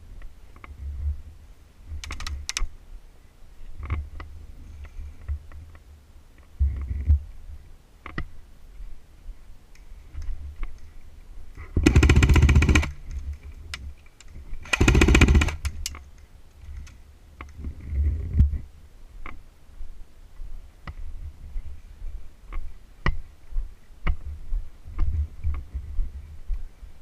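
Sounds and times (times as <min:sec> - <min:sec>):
rustling of movement: 0:00.0 - 0:27.0
airsoft gun automatic bursts: 0:11.8 - 0:13.0, 0:14.6 - 0:15.8.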